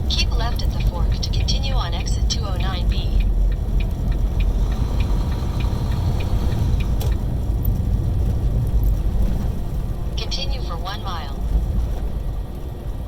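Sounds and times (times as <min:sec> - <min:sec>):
truck engine and road rumble: 0:00.0 - 0:13.0
light ticking: 0:00.3 - 0:07.9.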